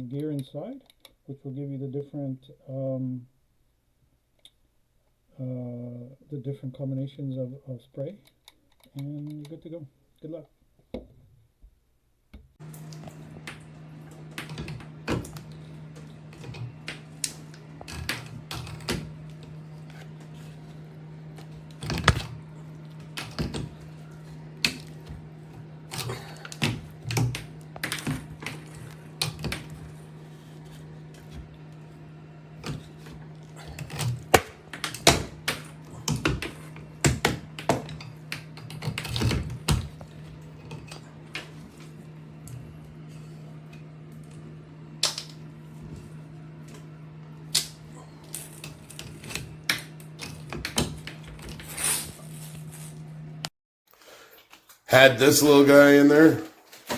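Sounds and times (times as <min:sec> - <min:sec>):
steady low hum: 0:12.5 - 0:53.5.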